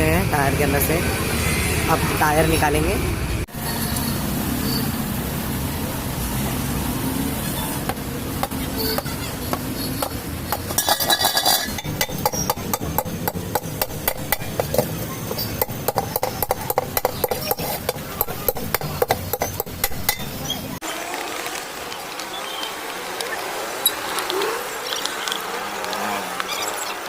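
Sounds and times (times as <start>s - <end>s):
sharp metal clicks and knocks: 7.9s - 20.4s
screwdriver scraping tyre rim: 8.4s - 20.7s.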